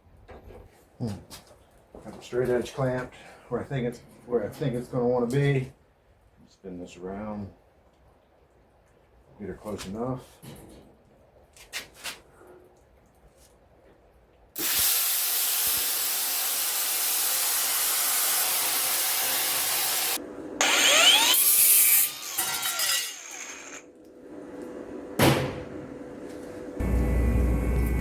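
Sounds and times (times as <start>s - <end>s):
power tool cutting sheet metal: 14.6s - 23.9s
power tool whine running free: 14.6s - 23.9s.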